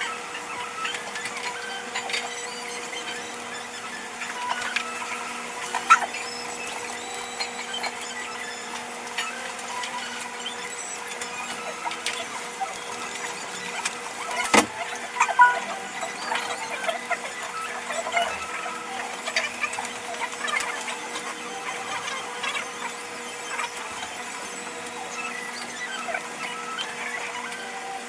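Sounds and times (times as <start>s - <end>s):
clicks knocks and squeaks: 0.0s - 27.8s
steady hum: 14.6s - 16.4s.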